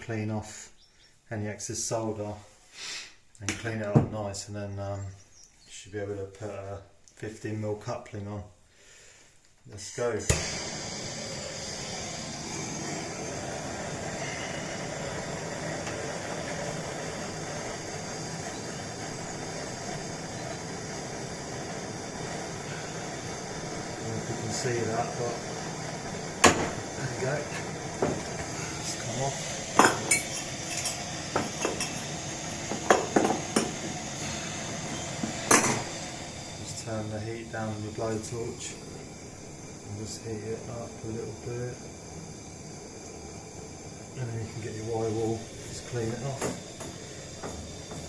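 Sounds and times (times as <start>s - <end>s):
blowtorch flame rushing: 9.8s - 48.0s
metal tools and pipe clinking: 29.8s - 32.1s.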